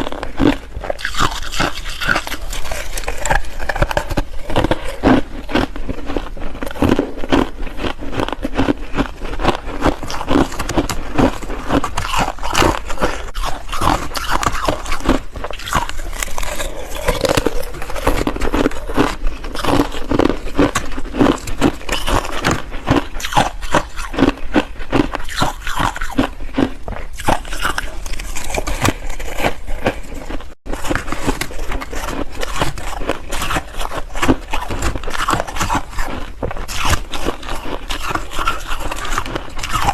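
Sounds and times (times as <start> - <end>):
ice crunching while chewed: 0.0 - 39.9.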